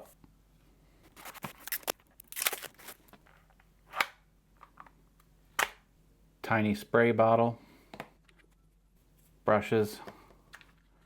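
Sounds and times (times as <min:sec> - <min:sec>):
rustling scrapes: 0:01.0 - 0:03.1.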